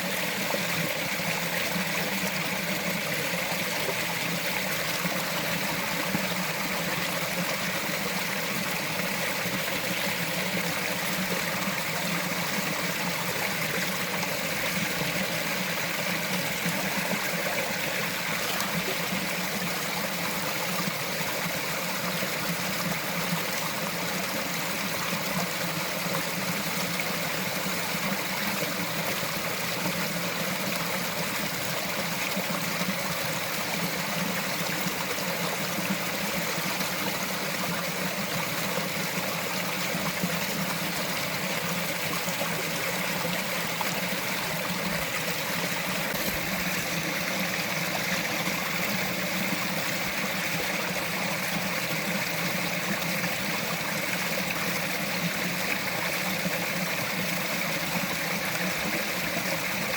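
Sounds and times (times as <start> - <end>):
stream trickling over rocks: 0.0 - 59.9.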